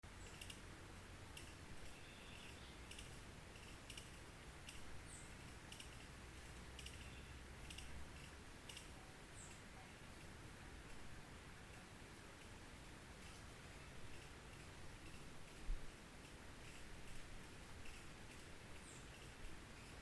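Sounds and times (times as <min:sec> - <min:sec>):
bird chirps and clicks: 0:00.2 - 0:00.7, 0:01.3 - 0:10.3, 0:17.8 - 0:20.0
high falling bird calls: 0:01.4 - 0:03.2.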